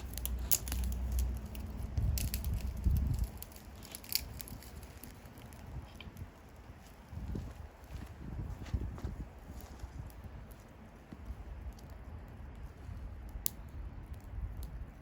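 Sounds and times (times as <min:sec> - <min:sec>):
low rumble: 0:00.0 - 0:10.5
wood fire crackling: 0:00.0 - 0:15.0.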